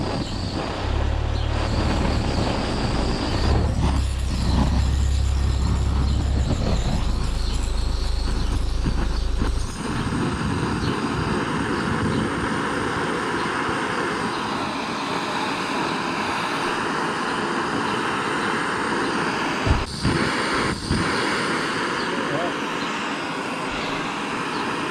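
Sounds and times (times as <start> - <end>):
deep rumble: 0.0 - 12.4
blowtorch hissing: 0.0 - 24.9.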